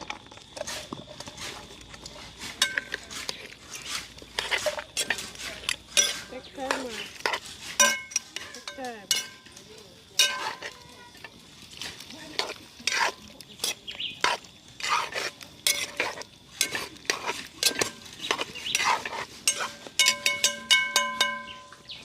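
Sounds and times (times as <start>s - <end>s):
spoon scraping food in a pot: 0.4s - 21.8s.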